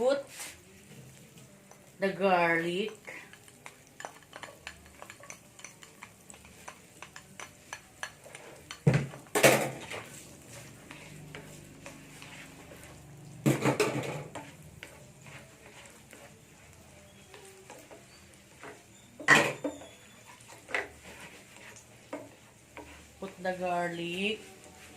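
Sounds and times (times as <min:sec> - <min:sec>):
utensil stirring in a pan: 0:00.0 - 0:24.9
metal cookware clattering: 0:02.4 - 0:10.1, 0:13.4 - 0:14.6, 0:17.7 - 0:21.0.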